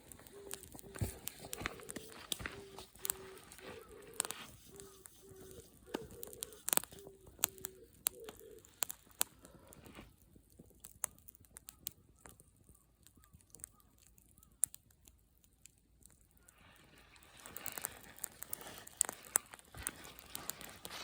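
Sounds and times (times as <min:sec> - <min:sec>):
dove cooing: 0:00.0 - 0:10.0
campfire crackling and popping: 0:00.0 - 0:21.0.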